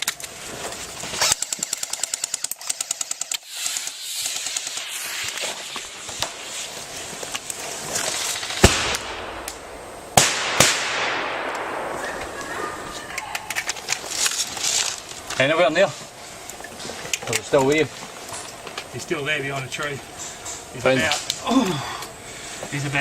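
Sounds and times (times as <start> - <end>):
sharp single cracks: 1.0 - 15.4
airsoft rifle full-auto burst: 1.2 - 5.6.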